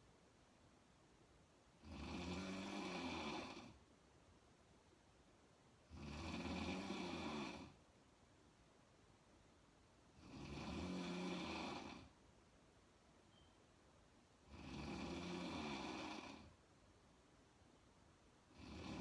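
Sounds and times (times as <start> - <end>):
woman snoring: 1.8 - 3.8, 5.9 - 7.8, 10.2 - 12.1, 14.5 - 16.6, 18.5 - 19.0.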